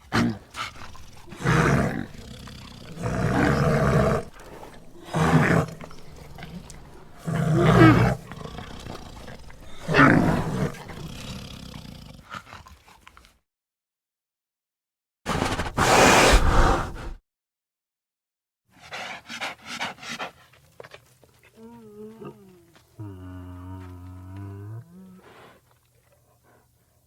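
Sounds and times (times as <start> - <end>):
bear roars: 0.0 - 12.3.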